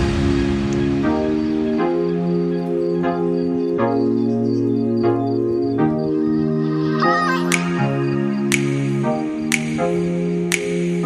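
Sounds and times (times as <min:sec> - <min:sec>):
slow background music: 0:00.0 - 0:11.0
light percussive tick: 0:07.5 - 0:11.0.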